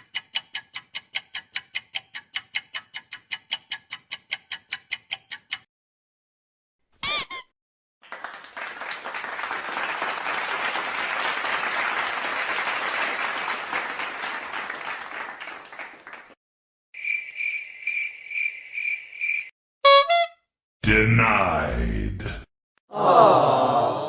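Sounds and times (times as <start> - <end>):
crowd applauding: 8.0 - 16.4
crickets chirping: 17.0 - 19.5.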